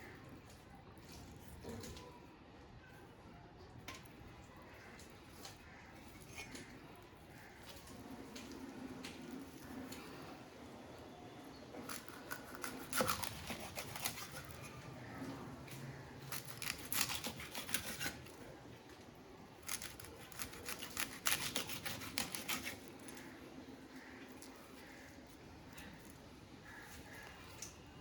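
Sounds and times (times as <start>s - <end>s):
knife scraping fish: 11.8s - 15.2s, 15.9s - 18.6s, 19.6s - 23.4s.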